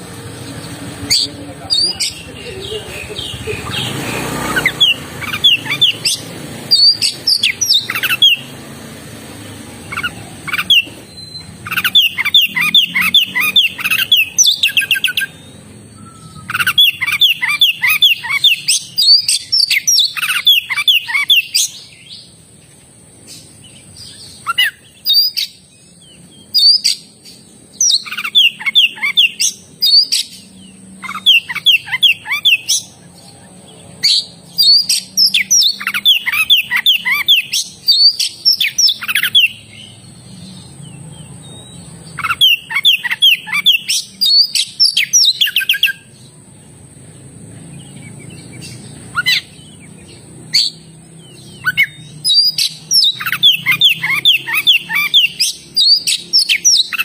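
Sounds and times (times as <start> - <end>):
bird singing whistled phrases: 10.0 - 22.2, 34.0 - 39.9, 41.6 - 46.1, 48.6 - 49.7, 50.5 - 57.0.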